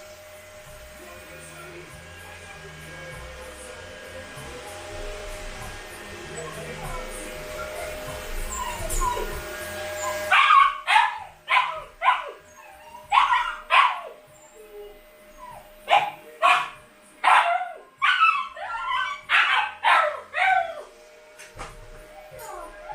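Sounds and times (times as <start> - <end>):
puppy yipping and barking: 7.6 - 9.4, 10.0 - 20.9.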